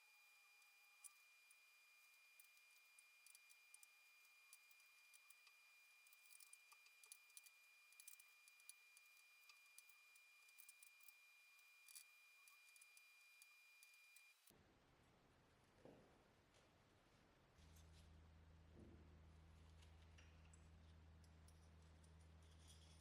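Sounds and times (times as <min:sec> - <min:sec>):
faint small clicks: 0:02.4 - 0:14.5.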